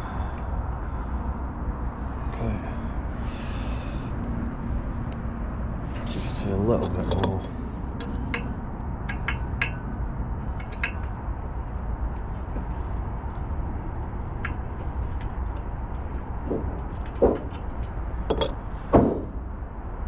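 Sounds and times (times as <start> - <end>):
metal clinks and taps: 6.0 - 13.4, 14.2 - 18.6
dull knocks: 16.4 - 17.7, 18.9 - 19.4.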